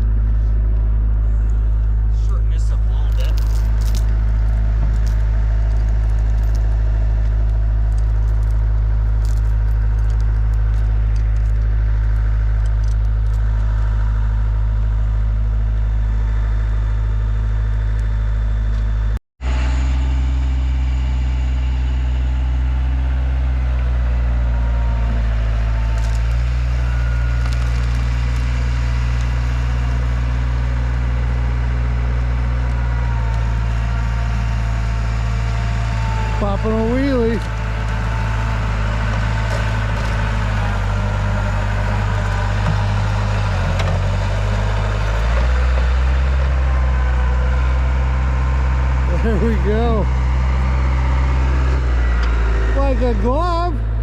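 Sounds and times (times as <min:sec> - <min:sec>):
vehicle engine droning: 0:00.0 - 0:54.0.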